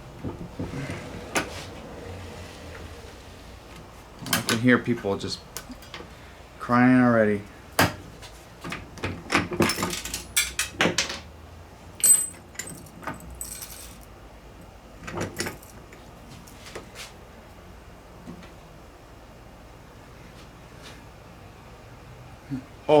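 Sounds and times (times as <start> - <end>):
metal parts clinking and clattering: 9.3 - 11.2, 12.0 - 14.1.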